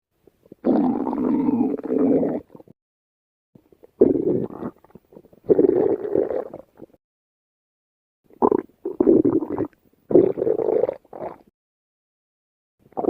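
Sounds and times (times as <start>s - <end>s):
stomach growling: 0.4s - 2.8s, 3.6s - 7.0s, 8.3s - 11.5s.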